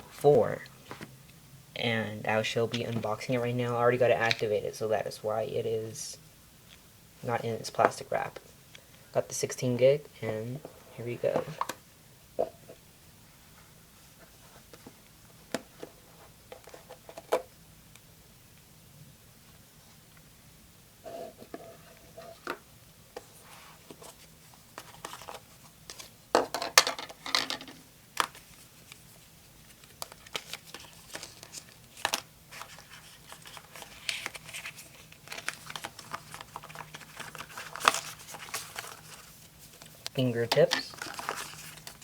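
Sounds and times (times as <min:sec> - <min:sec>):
cardboard and paper rustling: 0:23.2 - 0:27.2, 0:28.2 - 0:42.0.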